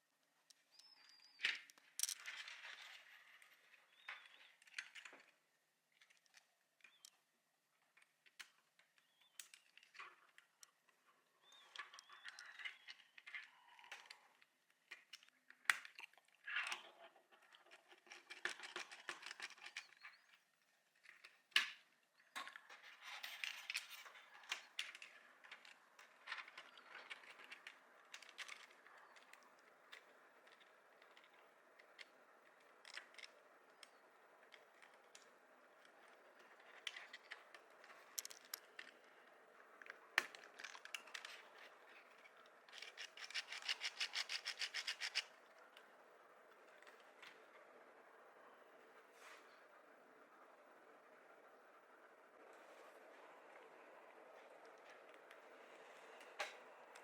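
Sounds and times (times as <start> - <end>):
plastic parts scraping and rustling: 0.5 - 50.0, 52.1 - 57.0
plastic parts clicking and tapping: 6.0 - 16.9, 23.4 - 45.9.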